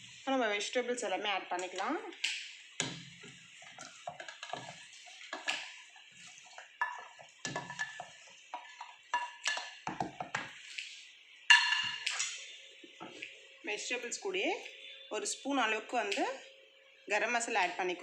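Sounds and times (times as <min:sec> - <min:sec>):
spoon clinking in bowl: 0:11.5 - 0:12.3.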